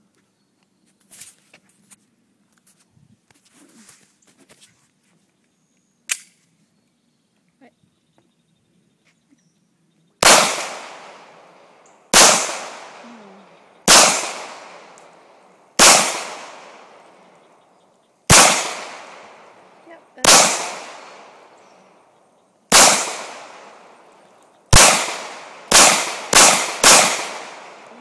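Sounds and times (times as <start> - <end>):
sharp click: 6.0 - 6.4
pistol shots: 10.2 - 13.0, 13.8 - 17.2, 18.3 - 21.6, 22.7 - 27.9.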